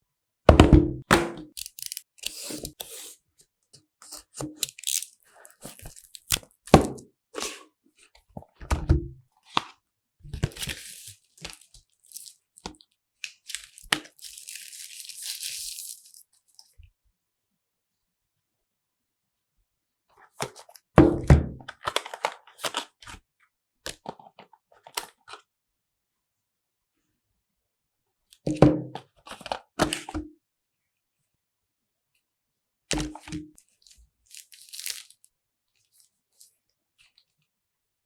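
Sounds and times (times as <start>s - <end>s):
plastic wrap tearing and rustling: 1.5s - 3.1s, 4.1s - 6.8s, 10.4s - 12.5s, 13.2s - 16.4s, 33.7s - 35.3s.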